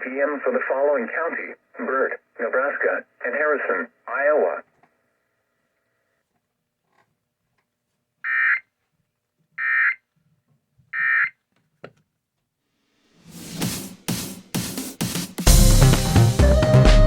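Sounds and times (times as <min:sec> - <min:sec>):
electronic music: 0:13.3 - 0:17.0.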